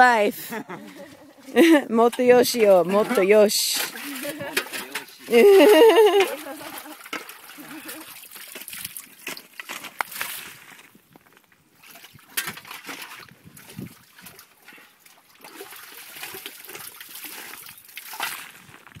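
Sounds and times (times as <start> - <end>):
water splashing and trickling: 0.9 - 10.9, 11.7 - 19.0.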